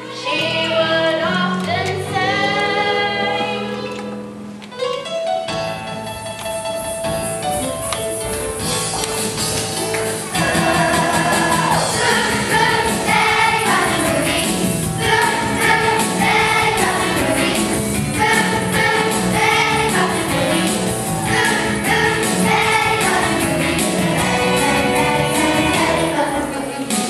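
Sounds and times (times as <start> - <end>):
children's choir singing: 0.0 - 4.1, 10.3 - 27.0
instrumental accompaniment: 0.0 - 27.0.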